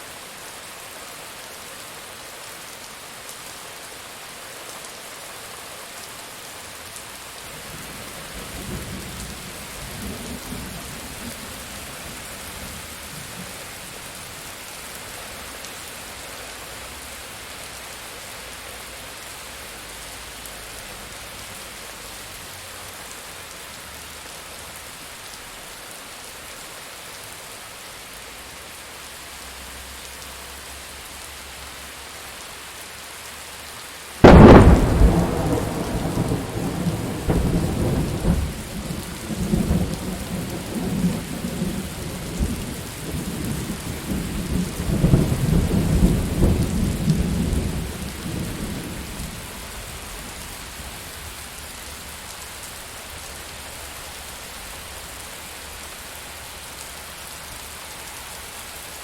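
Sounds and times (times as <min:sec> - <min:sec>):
steady rain falling: 0:00.0 - 0:59.0
loud thunderclap: 0:34.2 - 0:38.6
thunder rumbling: 0:34.2 - 0:50.1.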